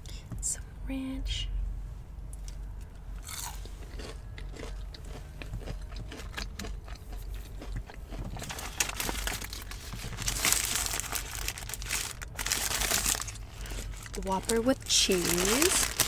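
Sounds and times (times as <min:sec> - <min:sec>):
person chewing crunchy food: 0:03.2 - 0:16.0.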